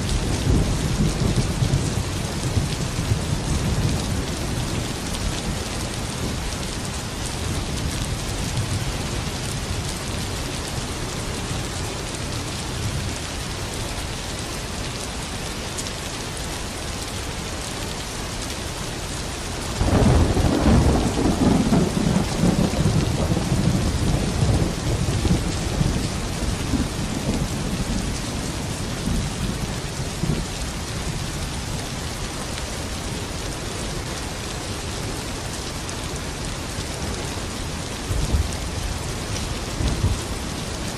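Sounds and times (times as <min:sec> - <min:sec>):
heavy rain falling: 0:00.0 - 0:40.9
thunderclap rumbling: 0:19.8 - 0:29.2, 0:39.8 - 0:40.6.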